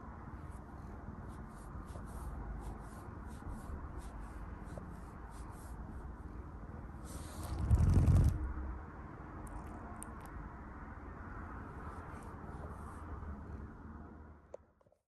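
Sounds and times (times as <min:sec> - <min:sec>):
soft scratchy strokes: 0:00.3 - 0:06.4, 0:07.0 - 0:08.4, 0:11.7 - 0:13.7.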